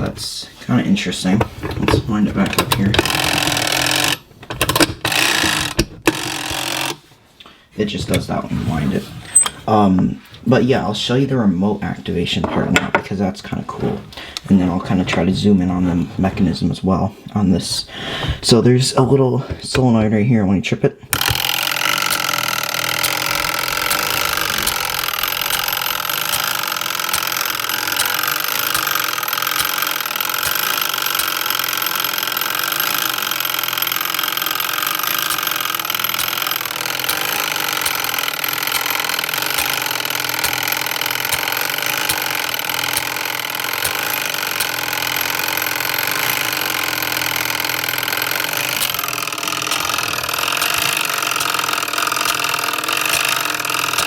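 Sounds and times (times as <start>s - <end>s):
fire alarm mechanism running: 1.4s - 7.2s, 21.1s - 54.0s.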